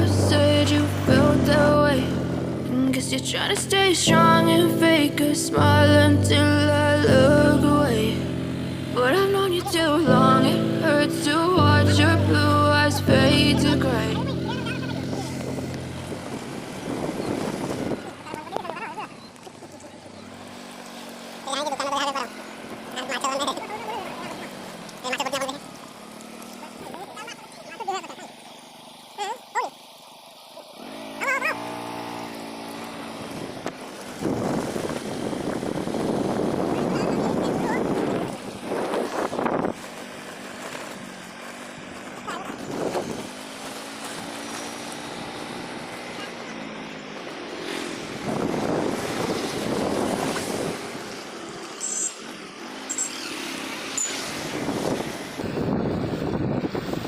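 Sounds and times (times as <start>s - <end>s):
motor engine running: 0.0s - 57.0s
rushing floodwater: 7.0s - 57.0s
wind buffeting microphone: 14.9s - 18.7s, 33.2s - 40.4s, 41.8s - 43.4s, 47.9s - 51.4s, 54.2s - 57.0s
wavering yelps: 30.6s - 31.7s.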